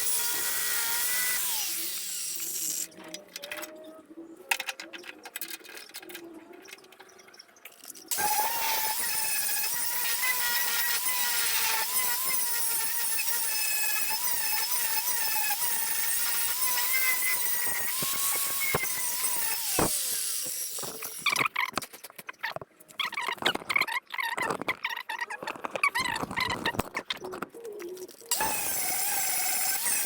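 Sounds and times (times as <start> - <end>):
electric power tool whining: 0.0 - 2.9, 8.1 - 21.2, 28.3 - 30.0.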